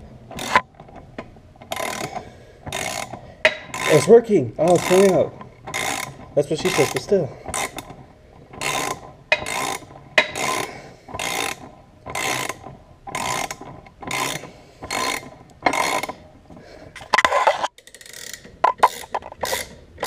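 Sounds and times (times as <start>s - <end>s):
ratchet wrench clicking: 0.3s - 0.6s, 1.6s - 8.0s, 8.6s - 16.2s, 17.8s - 19.8s.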